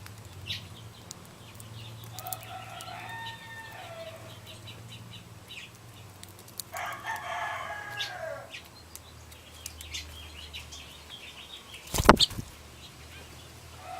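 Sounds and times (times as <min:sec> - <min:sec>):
rooster crowing: 0:02.2 - 0:04.7, 0:06.7 - 0:08.5.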